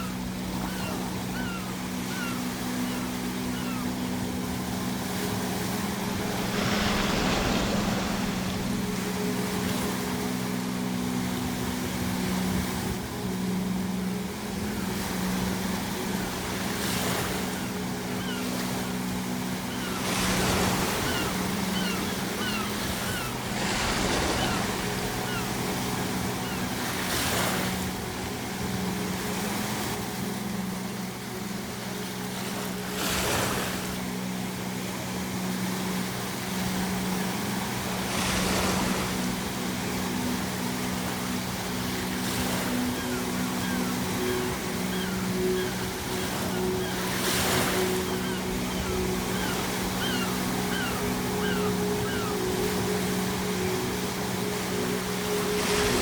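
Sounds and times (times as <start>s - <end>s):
gull calls: 0.0s - 4.6s, 16.8s - 27.6s, 41.9s - 53.7s
low hum: 0.0s - 33.0s
waves breaking on shore: 0.0s - 56.0s.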